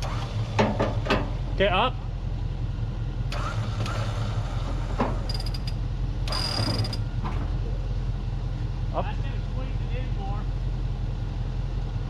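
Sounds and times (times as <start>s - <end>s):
engine running steadily: 0.0s - 12.0s
metallic creaks and clicks: 5.2s - 7.1s.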